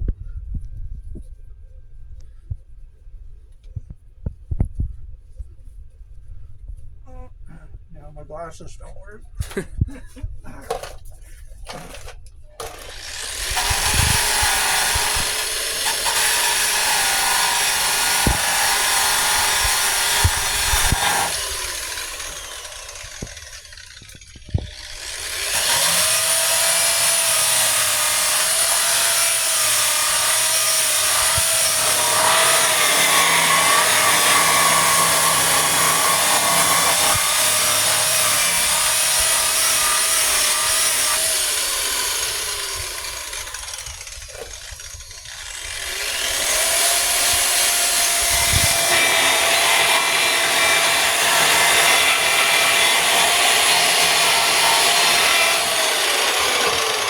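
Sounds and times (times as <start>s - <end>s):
electric sander motor whine: 12.7s - 30.3s.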